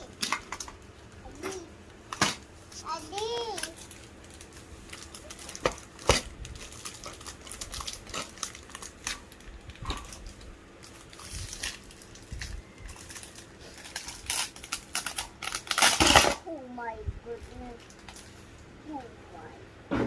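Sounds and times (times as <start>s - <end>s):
packaging crinkling and rustling: 0.1s - 16.4s.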